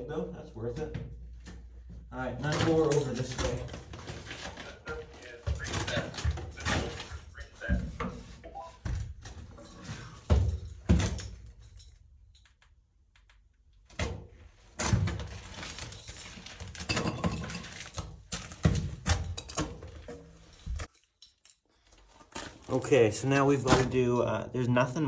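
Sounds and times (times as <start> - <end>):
knocks and scraping: 0.6 - 12.0, 13.9 - 24.3
rustling: 2.4 - 10.4, 14.6 - 24.0.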